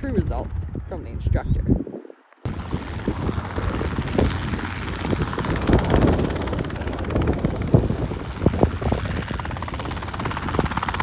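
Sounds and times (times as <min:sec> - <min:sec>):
helicopter engine and rotor: 0:02.4 - 0:11.0.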